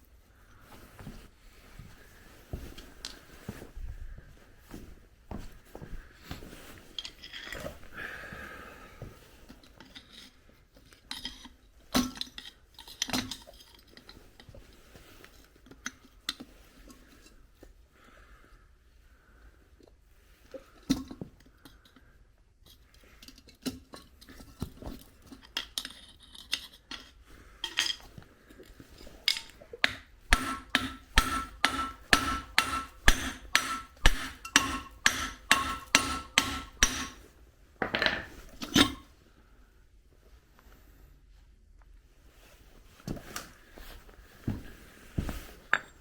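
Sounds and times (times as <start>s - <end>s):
hammer striking metal: 29.8s - 37.2s.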